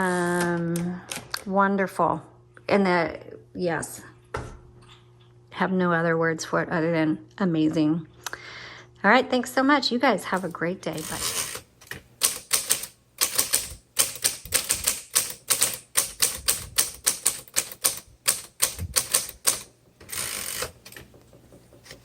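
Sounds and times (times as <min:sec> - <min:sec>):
manual typewriter key strikes: 0:11.0 - 0:21.6.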